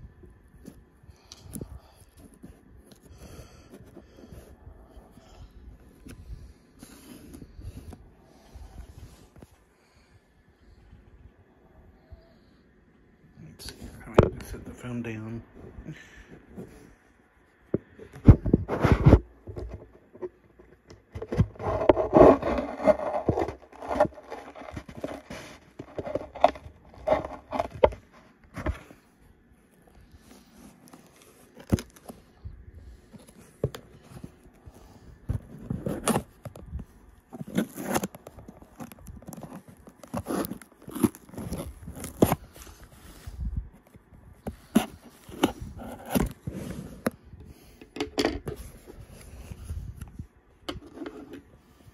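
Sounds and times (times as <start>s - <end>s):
packaging rustling: 21.2s - 29.0s, 29.9s - 43.2s
packaging scraping and tearing: 21.2s - 29.0s, 30.0s - 43.4s, 44.4s - 47.2s.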